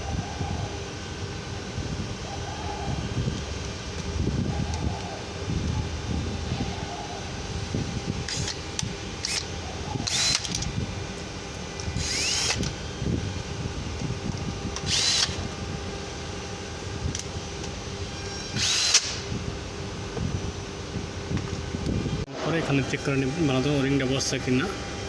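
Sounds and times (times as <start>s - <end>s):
cordless drill whining: 8.2s - 10.7s, 11.8s - 12.8s, 14.8s - 15.5s, 18.4s - 19.2s.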